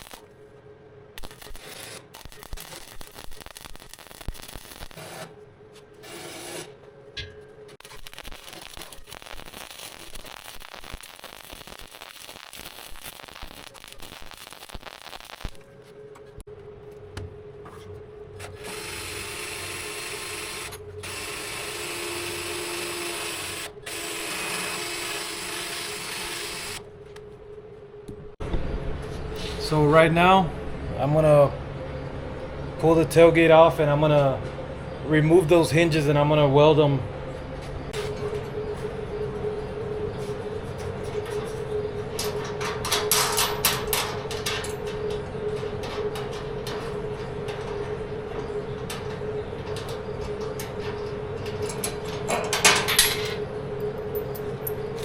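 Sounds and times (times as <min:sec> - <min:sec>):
electric welding arc crackling: 0:00.0 - 0:00.3, 0:01.2 - 0:05.3, 0:07.8 - 0:15.7
steady hum: 0:00.0 - 0:22.6, 0:26.7 - 0:55.0
metal clicks and clanks: 0:42.2 - 0:53.4.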